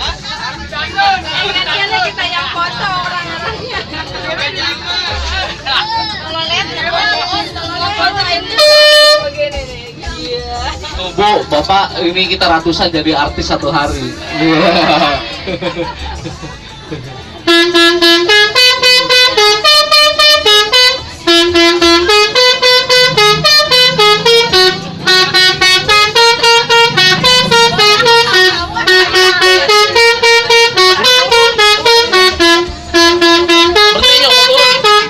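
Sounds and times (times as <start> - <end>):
bus air horn melody: 7.9 - 9.5, 17.4 - 35.0.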